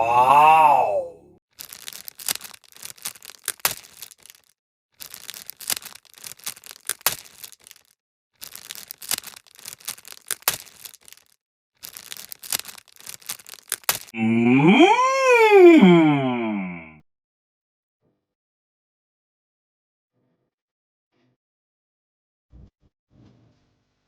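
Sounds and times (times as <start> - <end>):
plastic packaging crinkling: 1.5 - 14.2.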